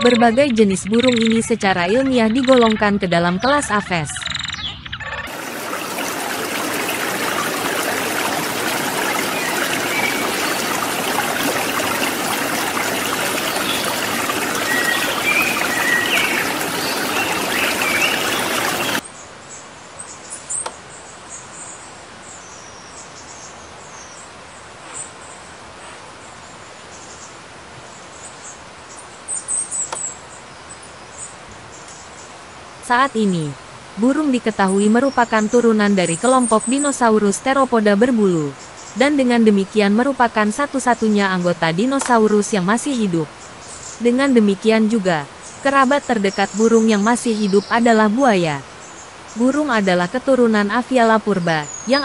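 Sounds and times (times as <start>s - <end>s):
birds chirping: 0.0s - 19.0s
running stream water: 5.2s - 19.1s, 31.4s - 52.0s.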